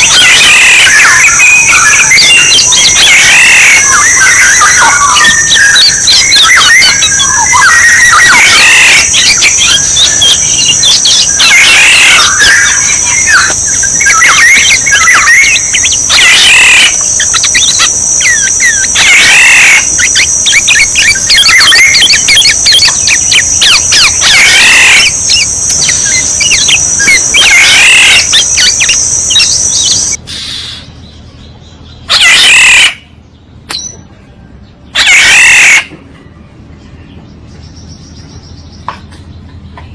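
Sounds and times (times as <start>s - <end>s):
oriole calls: 0.0s - 30.2s, 35.0s - 35.9s
steady high hiss: 0.0s - 30.8s.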